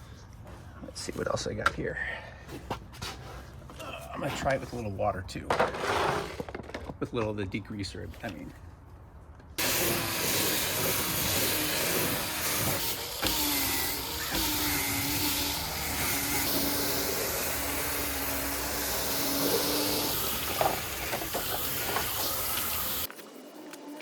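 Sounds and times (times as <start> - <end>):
cordless drill motor whine: 9.6 - 23.1.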